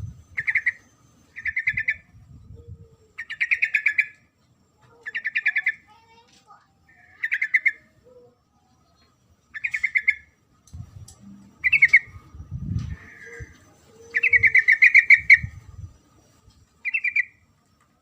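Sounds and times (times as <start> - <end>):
bulbul chattering call: 0.3 - 2.1, 3.2 - 4.2, 5.0 - 6.0, 6.9 - 8.2, 9.5 - 10.3, 11.6 - 12.2, 12.8 - 15.6.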